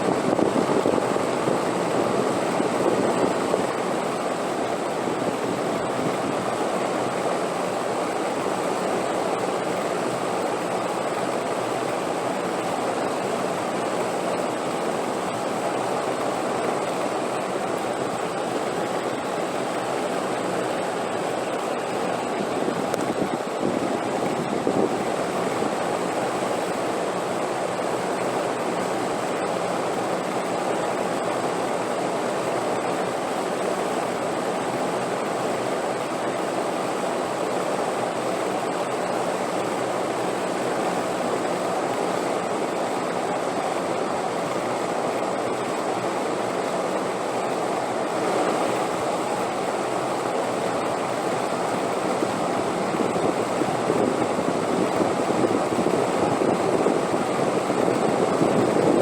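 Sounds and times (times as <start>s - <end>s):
wind blowing: 0.0s - 6.6s, 18.6s - 26.5s, 51.1s - 59.0s.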